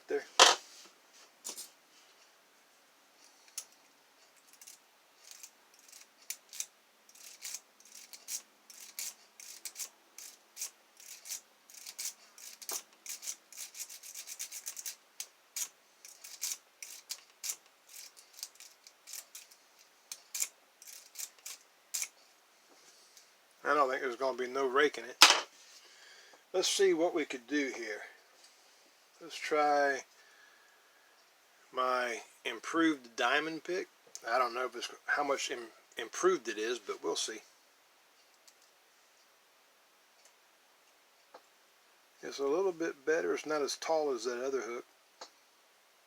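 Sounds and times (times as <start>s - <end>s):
lock pick scraping and clicking: 4.5s - 15.0s, 15.6s - 22.2s.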